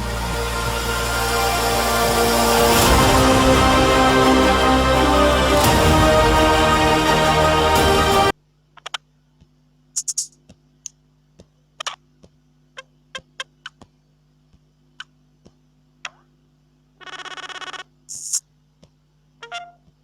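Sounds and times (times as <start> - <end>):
music: 0.0 - 8.4.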